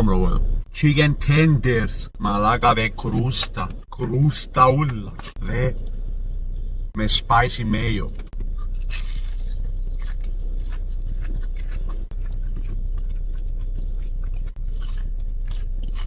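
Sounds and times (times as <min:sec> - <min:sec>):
steady low hum: 0:00.0 - 0:16.0
chewing crispy fried chicken: 0:07.8 - 0:16.0.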